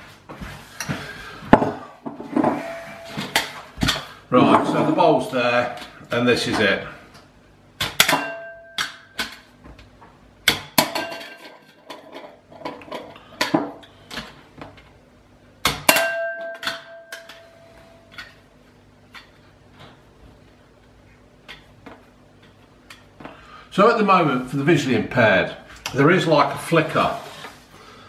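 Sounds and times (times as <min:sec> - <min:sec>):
bowl ringing: 0:02.5 - 0:03.6, 0:08.2 - 0:08.8, 0:15.9 - 0:18.2.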